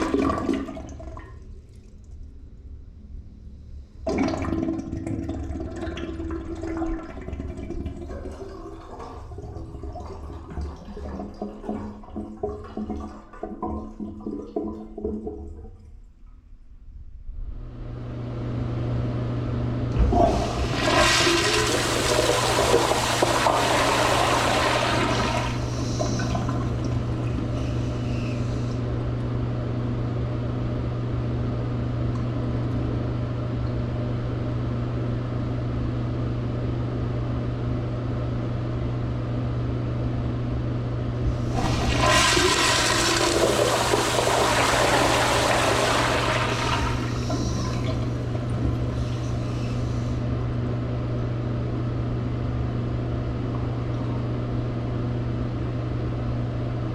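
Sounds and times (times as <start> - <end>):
toilet water rushing: 0.0 - 1.4, 4.1 - 15.6, 19.9 - 28.9, 41.2 - 50.2
low hum: 0.0 - 56.9
toilet flush click: 19.9 - 28.0, 41.3 - 50.0.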